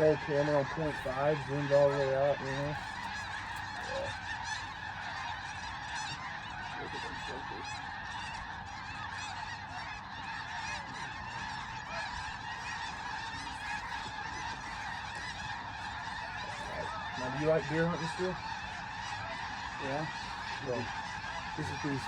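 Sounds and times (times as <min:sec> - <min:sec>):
flock of geese honking: 0:00.0 - 0:22.0.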